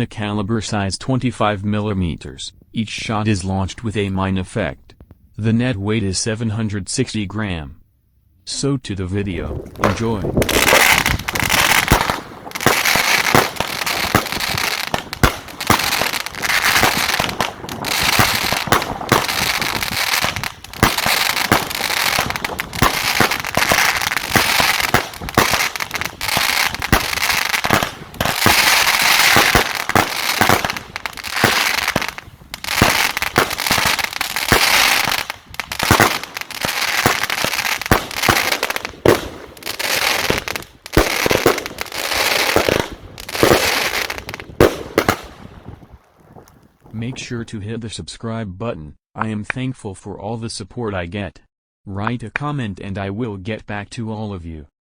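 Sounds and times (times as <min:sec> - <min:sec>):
fireworks crackling: 0:09.2 - 0:47.5
firework launch bangs: 0:09.4 - 0:47.2.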